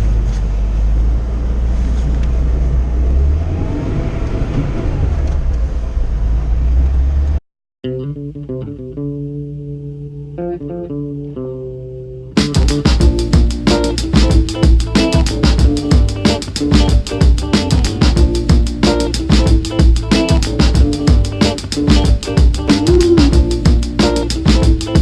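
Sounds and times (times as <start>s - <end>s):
car engine and road rumble: 0.0s - 7.4s
plucked guitar and bass music: 7.8s - 25.0s
drums: 12.4s - 25.0s.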